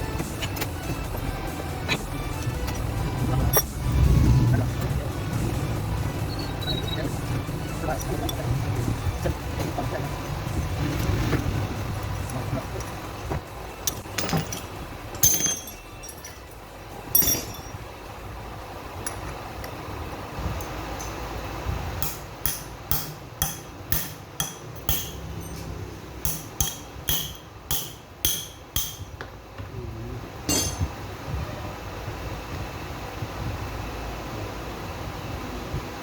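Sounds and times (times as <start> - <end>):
hammer striking metal: 15.2 - 16.2, 17.2 - 17.8, 22.0 - 29.2, 30.5 - 31.0.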